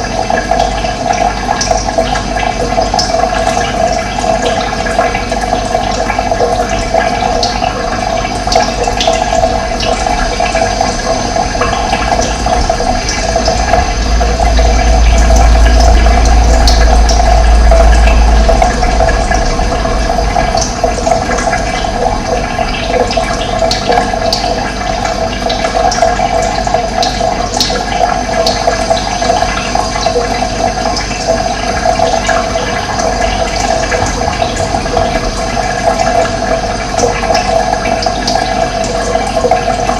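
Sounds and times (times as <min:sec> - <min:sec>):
running water rushing: 0:00.0 - 0:39.9
low rumble: 0:06.2 - 0:27.6, 0:29.4 - 0:39.0.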